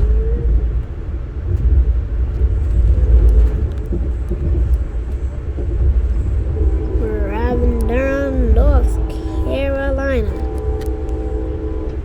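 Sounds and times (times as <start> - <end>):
train rumble from on board: 0.0 - 12.0
faint steady tones: 5.1 - 12.0.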